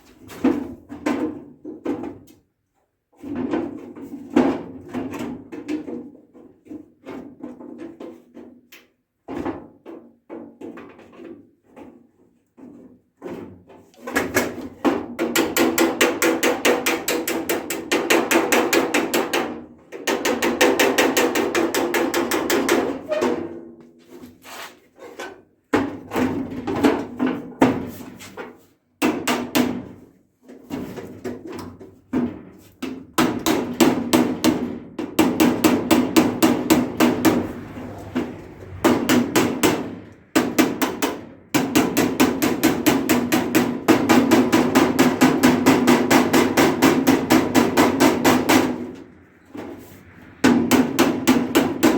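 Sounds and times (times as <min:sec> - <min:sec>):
hammer strikes on rivets: 0:14.0 - 0:23.0, 0:29.0 - 0:30.0, 0:32.2 - 0:37.4, 0:39.0 - 0:48.9.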